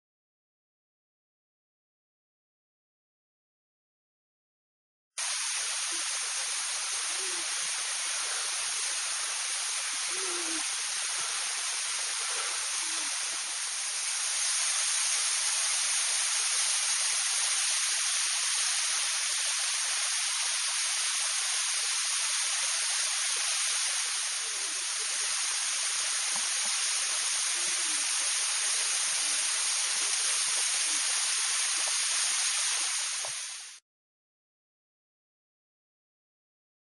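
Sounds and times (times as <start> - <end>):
waterfall rushing: 5.2 - 33.8.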